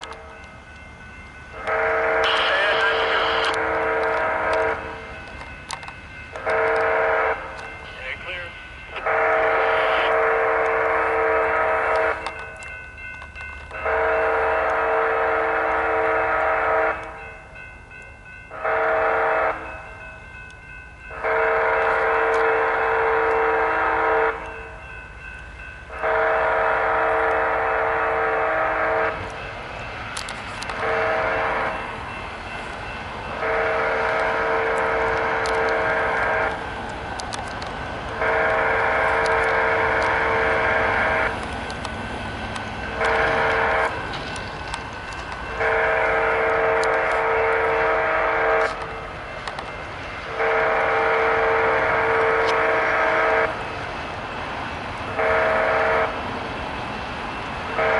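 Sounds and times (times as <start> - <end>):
locomotive air horn blasts: 1.6 - 4.8, 6.4 - 12.2, 13.8 - 17.0, 18.5 - 19.6, 21.2 - 24.4, 26.0 - 29.2, 30.7 - 31.7, 33.4 - 36.5, 38.2 - 41.3, 43.0 - 44.0, 45.6 - 48.9, 50.3 - 53.6, 55.2 - 56.1.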